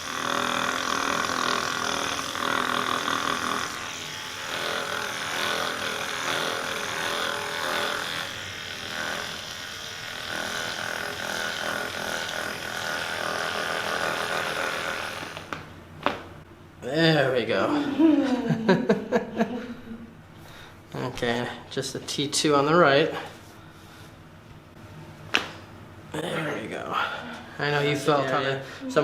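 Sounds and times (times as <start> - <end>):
small electric motor buzzing: 0.0 - 15.6.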